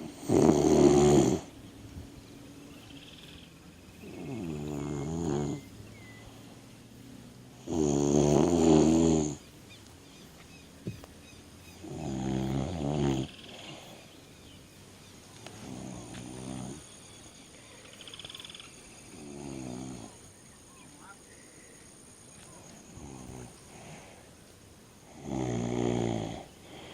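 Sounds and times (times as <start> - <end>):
man snoring: 0.0 - 1.5, 4.0 - 5.6, 7.5 - 9.4, 11.8 - 13.8, 15.5 - 16.9, 19.1 - 20.2, 22.9 - 24.1, 25.1 - 26.9.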